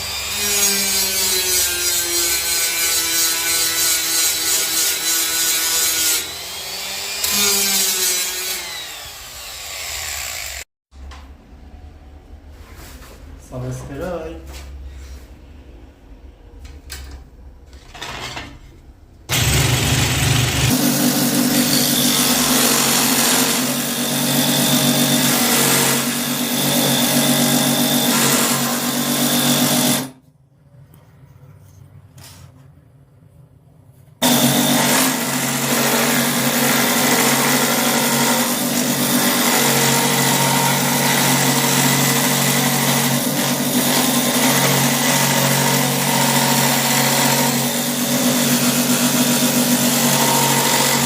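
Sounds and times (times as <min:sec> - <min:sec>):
die grinder grinding wood: 0:00.0 - 0:10.6, 0:19.3 - 0:30.2, 0:34.2 - 0:51.0.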